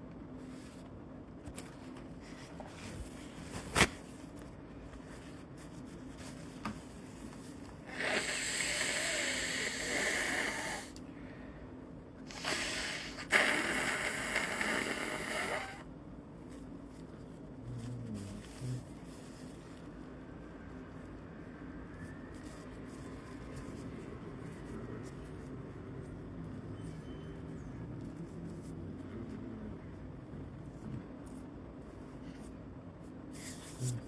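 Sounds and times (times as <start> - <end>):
congested nasal breathing: 7.8 - 11.0, 12.3 - 15.8.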